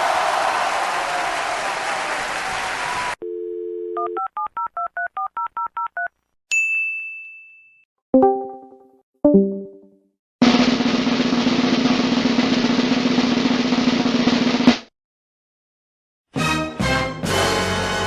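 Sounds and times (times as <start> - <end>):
telephone dial tone: 3.2 - 6.1
touch-tone dialing beeps: 3.2 - 6.1
high ding: 6.5 - 7.8.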